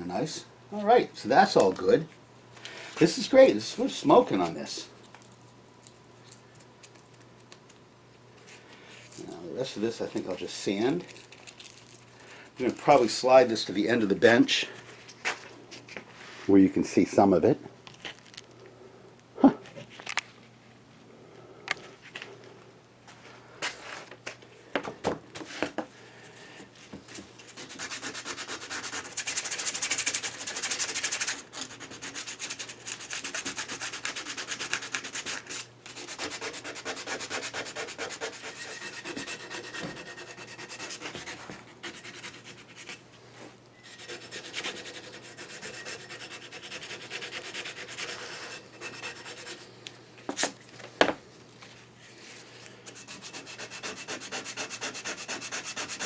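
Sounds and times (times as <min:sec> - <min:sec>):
sandpaper scratching on metal: 0:27.5 - 0:43.0, 0:43.8 - 0:49.7, 0:52.9 - 0:56.0.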